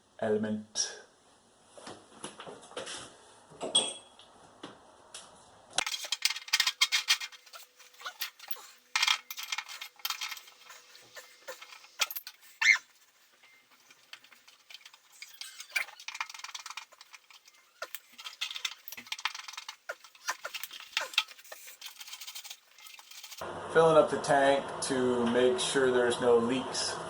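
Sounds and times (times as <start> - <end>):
metal scraping: 5.8 - 23.4
metal tools clicking and clinking: 5.8 - 23.4.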